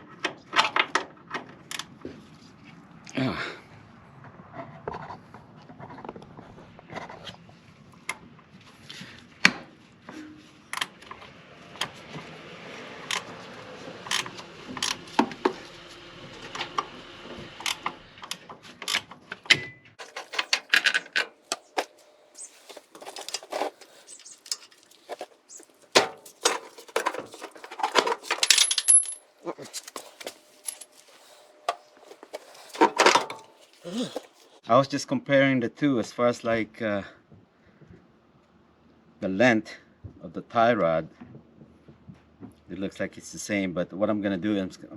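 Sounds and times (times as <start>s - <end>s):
metal tools clinking and knocking: 20.0s - 34.6s.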